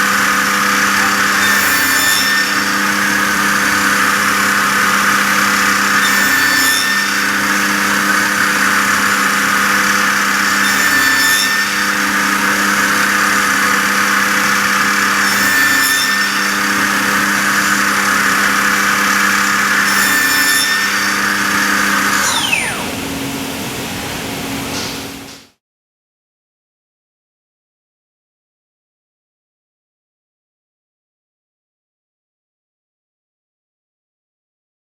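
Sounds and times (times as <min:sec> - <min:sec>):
spindle saw whining: 0:00.0 - 0:24.9.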